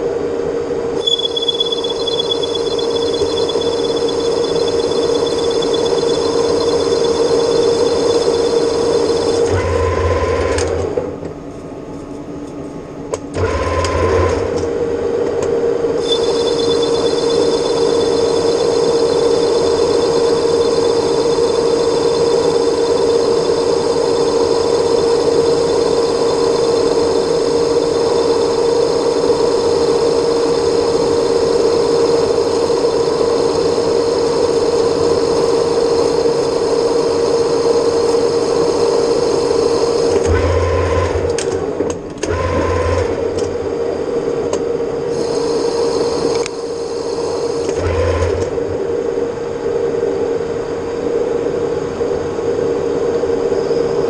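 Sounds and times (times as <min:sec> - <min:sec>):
high-pitched ringing: 0:01.0 - 0:09.5, 0:16.0 - 0:40.1
metal lathe humming: 0:01.0 - 0:10.8, 0:16.0 - 0:41.6, 0:44.9 - 0:48.4.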